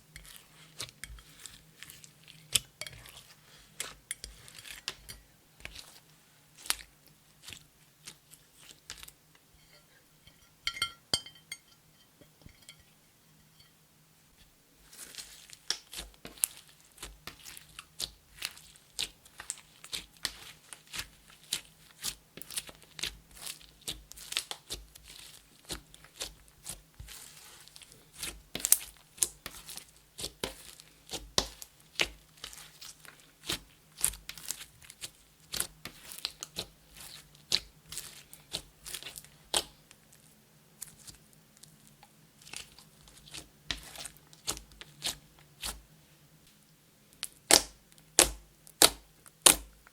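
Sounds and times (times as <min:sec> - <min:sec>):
slime popping and crackling: 0:15.3 - 0:39.8, 0:47.2 - 0:49.8.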